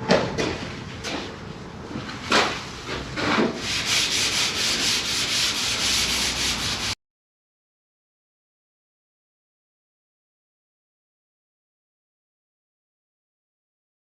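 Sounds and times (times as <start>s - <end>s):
sandpaper sanding car panel: 3.6s - 7.0s.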